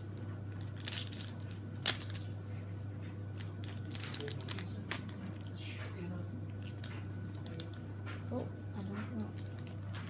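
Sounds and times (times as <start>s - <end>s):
steady low hum: 0.0s - 10.0s
plastic packaging crinkling: 0.1s - 2.4s, 3.3s - 5.6s, 6.6s - 7.9s, 8.8s - 10.0s.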